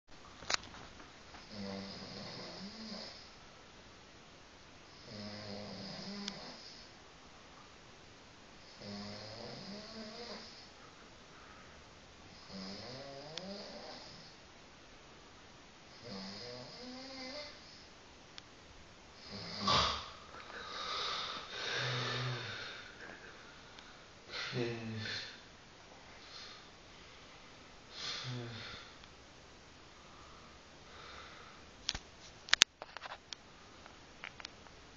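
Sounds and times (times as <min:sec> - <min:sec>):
man snoring: 0:01.4 - 0:03.3, 0:05.0 - 0:06.9, 0:08.7 - 0:10.7, 0:12.3 - 0:14.4, 0:15.9 - 0:17.8, 0:19.2 - 0:23.2, 0:24.3 - 0:25.4, 0:28.0 - 0:29.0.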